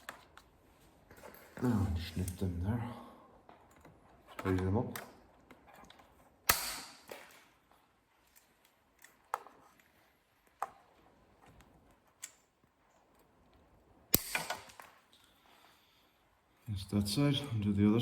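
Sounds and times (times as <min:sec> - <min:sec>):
cutters snipping cable ties: 0:06.5 - 0:07.4.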